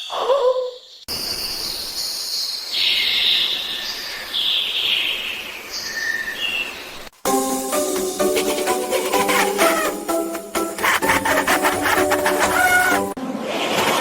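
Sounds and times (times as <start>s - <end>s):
plucked music: 7.3s - 13.2s.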